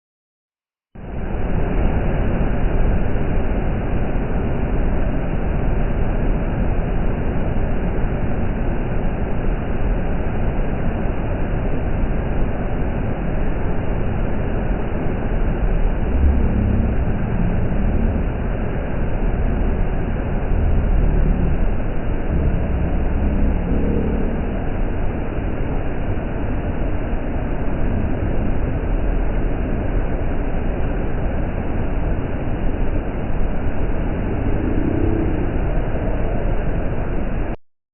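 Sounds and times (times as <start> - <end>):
low rumbles: 1.0 - 37.6
waterfall rushing: 13.7 - 36.8.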